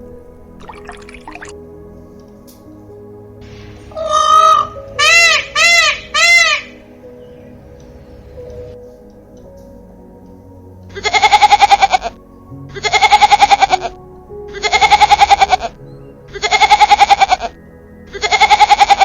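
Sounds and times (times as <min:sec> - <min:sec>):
background music: 0:00.0 - 0:19.0
quavering animal call: 0:03.9 - 0:08.7, 0:10.9 - 0:19.0.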